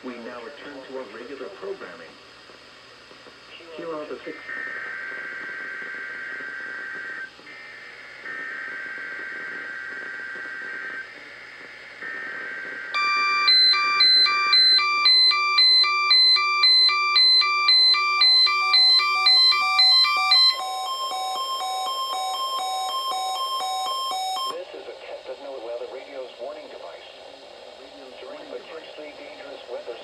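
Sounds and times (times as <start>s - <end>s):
steady electronic alarm tone: 12.0s - 24.6s
high electronic alarm beeps: 13.0s - 24.6s.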